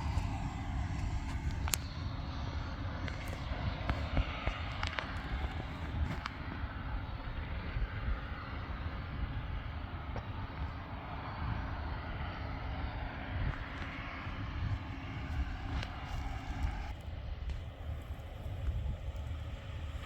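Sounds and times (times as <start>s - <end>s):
engine rumble: 0.0s - 20.0s.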